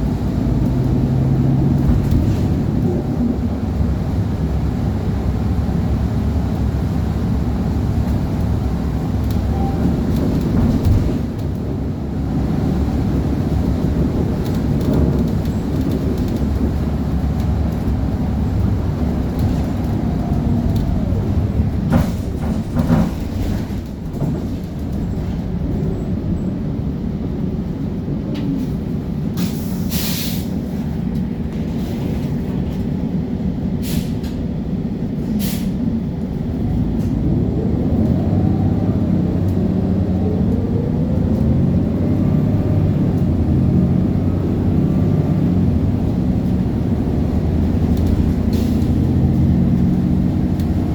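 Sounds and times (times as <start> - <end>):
bus diesel engine: 0.0 - 50.9
air brake hiss: 29.4 - 30.6, 33.8 - 34.3, 35.4 - 35.8.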